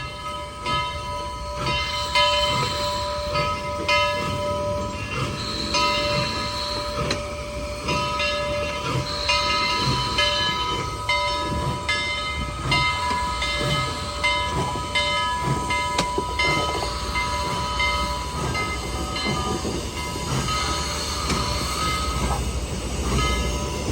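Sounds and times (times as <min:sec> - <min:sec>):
running train beat: 0:00.0 - 0:23.9.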